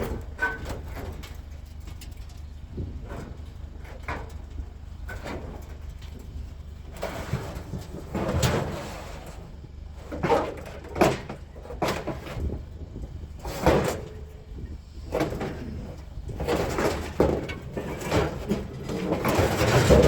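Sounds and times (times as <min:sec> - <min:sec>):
scrap metal scraping and knocking: 0:03.0 - 0:12.6, 0:15.1 - 0:20.0.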